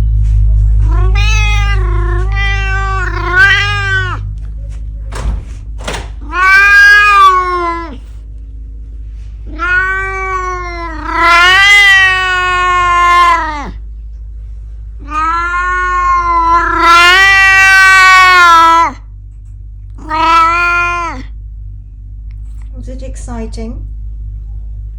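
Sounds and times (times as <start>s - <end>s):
cat yowling: 0.8s - 4.3s, 6.2s - 8.2s, 9.5s - 13.8s, 15.0s - 19.0s, 20.0s - 21.4s.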